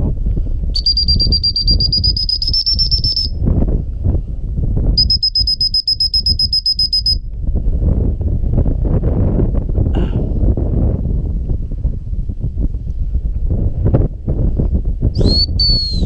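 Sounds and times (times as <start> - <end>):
wind rumbling on microphone: 0.0 - 16.0
dog whistle blasts: 0.8 - 3.4, 5.0 - 7.2, 15.2 - 16.0.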